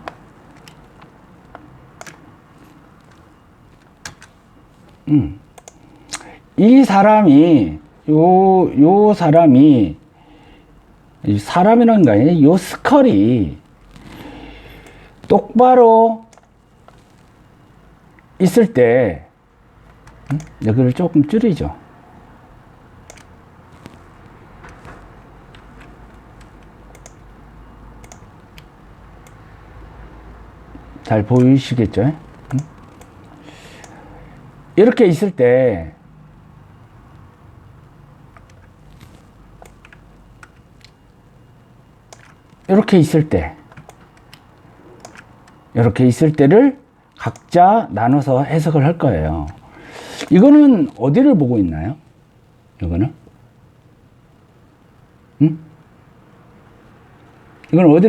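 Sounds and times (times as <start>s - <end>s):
mouse and keyboard clicks: 0.0s - 3.3s, 19.9s - 20.7s, 23.1s - 24.0s, 24.6s - 27.3s, 28.0s - 29.4s, 32.2s - 33.2s, 42.1s - 42.6s, 45.0s - 45.6s
steady low hum: 0.0s - 58.0s
faint sharp clicks: 28.0s - 29.4s.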